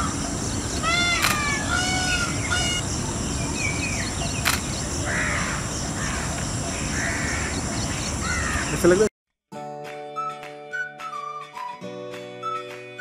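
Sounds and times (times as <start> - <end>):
outdoor background noise: 0.0 - 9.1
peacock calls: 0.0 - 9.1
sharp click: 1.2 - 1.4, 4.4 - 4.7.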